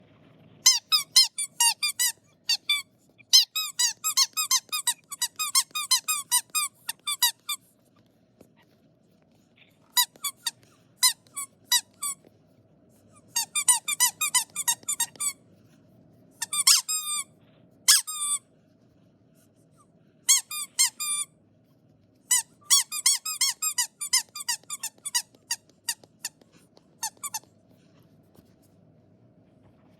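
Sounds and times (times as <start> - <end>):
high-pitched squeaks: 0.6 - 7.6.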